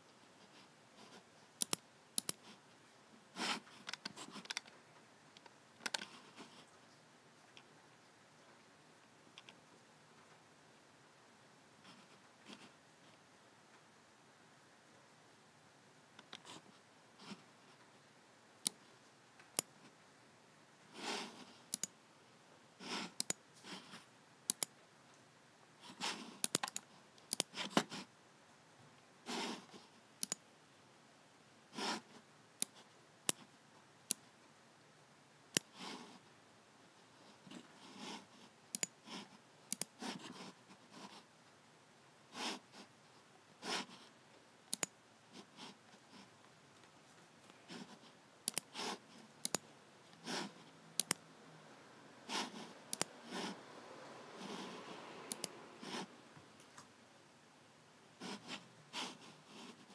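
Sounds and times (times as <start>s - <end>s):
computer mouse buttons clicking: 1.6s - 2.5s, 3.8s - 4.7s, 5.4s - 6.2s, 21.7s - 22.0s, 23.1s - 23.4s, 24.5s - 24.7s, 26.4s - 27.8s, 30.2s - 30.4s, 38.7s - 39.0s, 39.7s - 40.0s, 44.7s - 45.0s, 48.4s - 49.6s, 51.0s - 51.2s, 52.9s - 53.1s, 55.3s - 56.0s.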